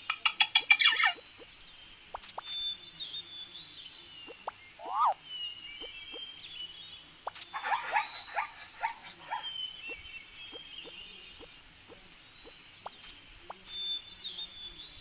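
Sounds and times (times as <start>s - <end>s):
steady high hiss: 0.0s - 15.0s
birds chirping and whistling: 0.6s - 11.6s, 12.4s - 15.0s
rising and falling bird call: 2.2s - 11.5s.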